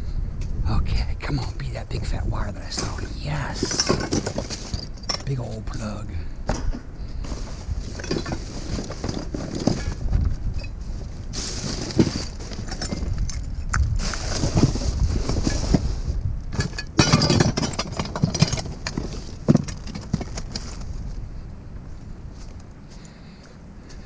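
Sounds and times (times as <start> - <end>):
steady low rumble: 0.0 - 24.0
rustling: 2.6 - 5.6, 7.0 - 21.3
scrap knocking and clattering: 2.8 - 5.3, 6.5 - 10.7, 11.4 - 15.9, 16.6 - 20.9.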